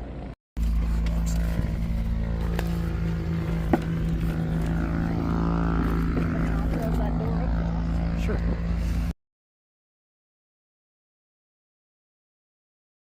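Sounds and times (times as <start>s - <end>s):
aircraft piston engine running: 0.0s - 9.1s.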